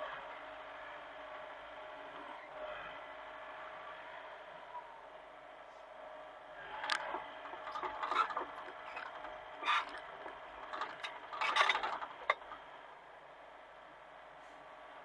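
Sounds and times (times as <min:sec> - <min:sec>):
excavator engine drone: 0:00.0 - 0:15.0
metallic clanking and scraping: 0:06.7 - 0:12.6.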